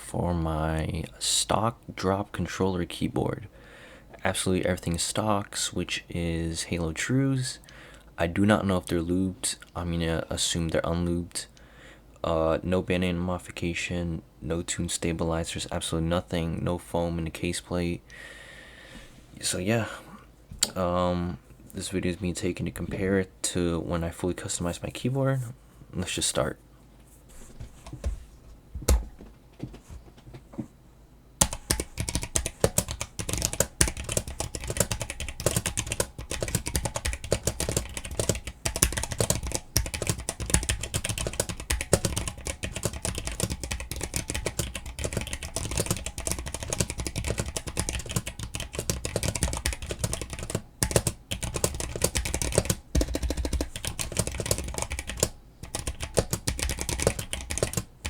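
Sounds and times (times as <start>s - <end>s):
mechanical keyboard typing: 31.4s - 57.9s.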